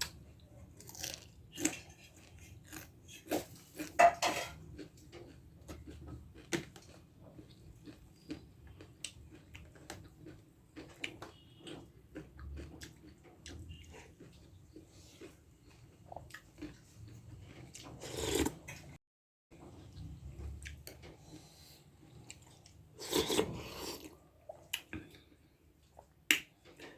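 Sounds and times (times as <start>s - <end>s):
chewing: 0.4s - 18.9s, 19.6s - 26.9s
utensils clinking on dishes: 4.0s - 4.7s.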